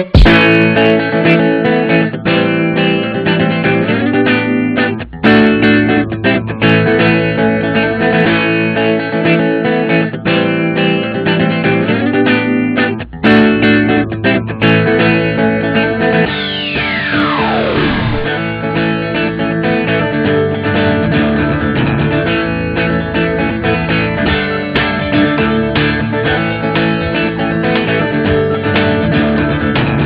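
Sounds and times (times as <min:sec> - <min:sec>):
guitar music: 0:00.0 - 0:30.0
falling pitch sweep: 0:15.8 - 0:27.7.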